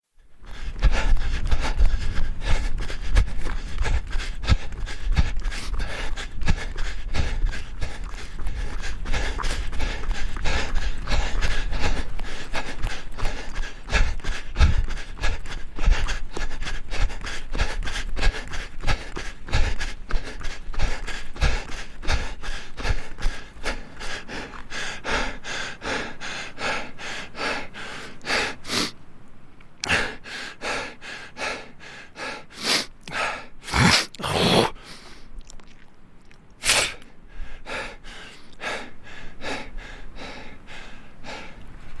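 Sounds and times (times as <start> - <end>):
person panting while running: 0.4 - 28.9, 29.8 - 35.2, 37.3 - 42.0.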